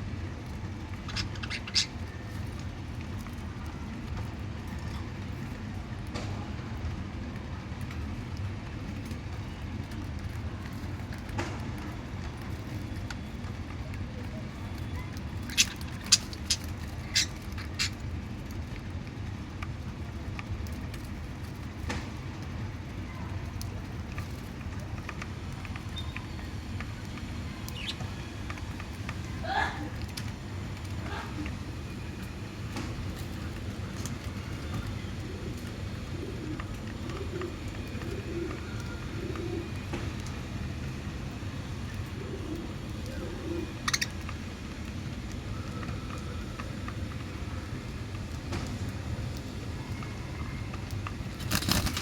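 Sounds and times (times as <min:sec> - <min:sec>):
low background hum: 0:00.0 - 0:52.0
bird cracking seeds: 0:15.2 - 0:18.9, 0:50.7 - 0:52.0
bird chirp: 0:15.4 - 0:18.0
soft low cooing bird calls: 0:29.2 - 0:47.9.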